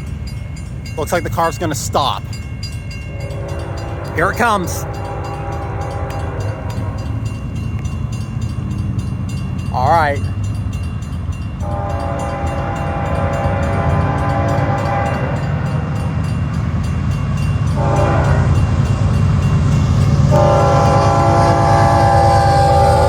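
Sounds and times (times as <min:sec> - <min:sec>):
diesel locomotives rumbling: 0:00.0 - 0:23.0
locomotive horn blasts: 0:03.1 - 0:07.3, 0:11.6 - 0:16.2, 0:17.7 - 0:19.3, 0:20.0 - 0:23.0.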